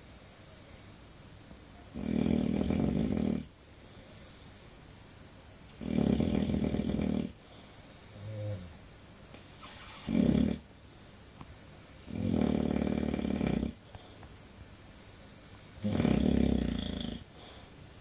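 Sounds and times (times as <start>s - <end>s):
dog snoring: 1.9s - 3.6s, 5.7s - 7.4s, 8.0s - 10.7s, 12.0s - 14.0s, 15.8s - 17.6s.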